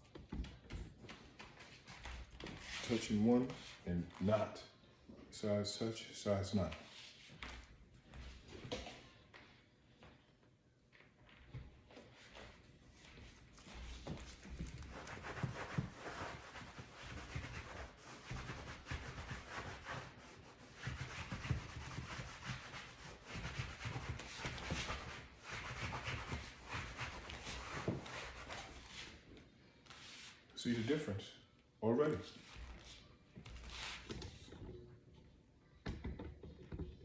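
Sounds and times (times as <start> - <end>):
cloth rubbing on leather: 13.9 - 29.2.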